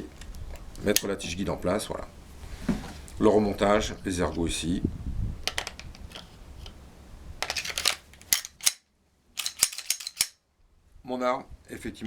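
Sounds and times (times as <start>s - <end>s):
metal parts sliding: 5.5s - 6.8s, 7.4s - 8.8s, 9.4s - 10.4s
pistol parts clicking: 5.5s - 6.8s, 7.4s - 10.4s.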